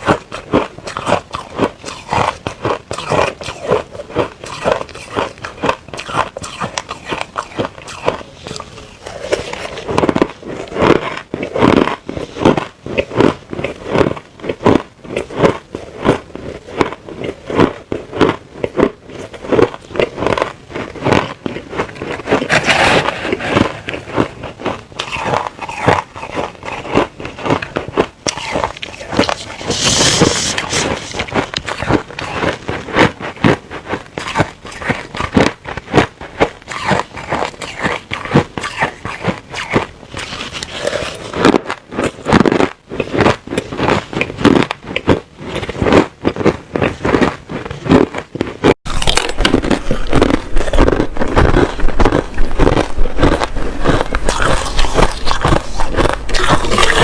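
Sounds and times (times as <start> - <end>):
crushed ice crunching: 27.5 - 32.9, 48.9 - 57.0.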